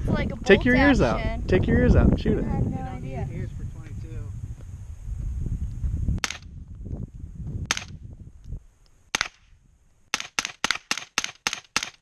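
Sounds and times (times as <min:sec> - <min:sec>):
wind rumble on microphone: 0:00.0 - 0:09.9
rifle gunshots: 0:06.2 - 0:06.5, 0:07.7 - 0:07.9, 0:09.1 - 0:09.4.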